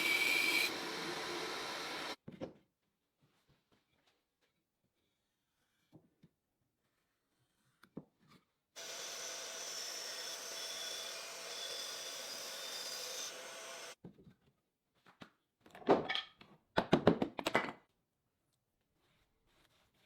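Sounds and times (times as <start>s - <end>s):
power tool running: 0.0s - 2.2s, 8.8s - 14.0s.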